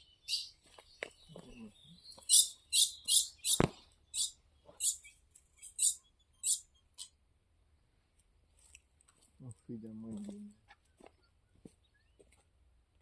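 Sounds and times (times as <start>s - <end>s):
songbird chirping: 0.0s - 7.2s, 9.4s - 12.4s.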